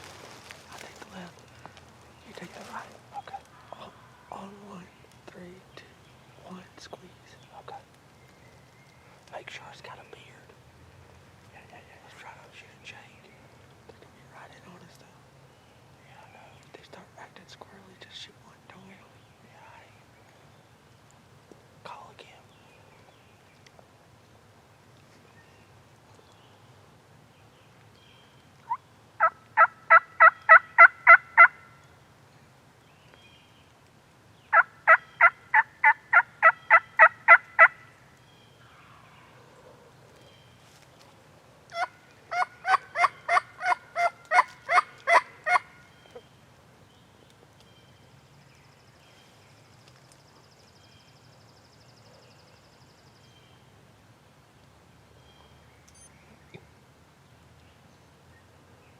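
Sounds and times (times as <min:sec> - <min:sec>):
turkey call yelps: 0:28.6 - 0:31.7, 0:34.5 - 0:37.8, 0:41.7 - 0:45.8.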